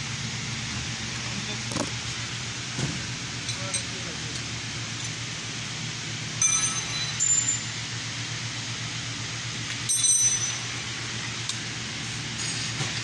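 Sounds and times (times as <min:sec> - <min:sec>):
steady low hum: 0:00.0 - 0:13.0
metal clinking: 0:06.4 - 0:07.8, 0:09.7 - 0:10.9.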